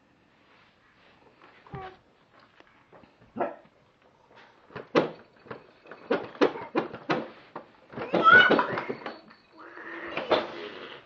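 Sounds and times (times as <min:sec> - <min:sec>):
babies making vocal noises: 0:08.0 - 0:11.0.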